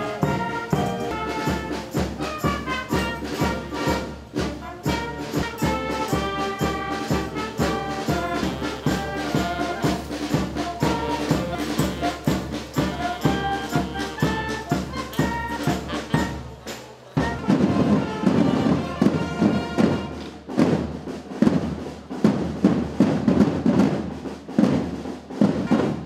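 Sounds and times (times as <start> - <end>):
brass-led orchestral music: 0.0 - 20.5, 25.7 - 26.0.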